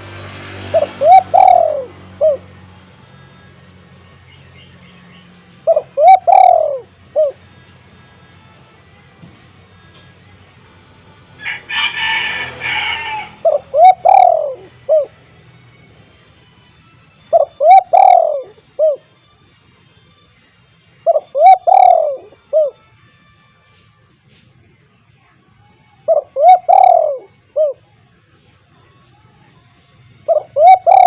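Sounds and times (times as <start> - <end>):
dove cooing: 0.7 - 2.6, 5.6 - 7.5, 11.8 - 15.2, 17.3 - 19.1, 21.0 - 22.8, 26.0 - 27.9, 30.3 - 31.0.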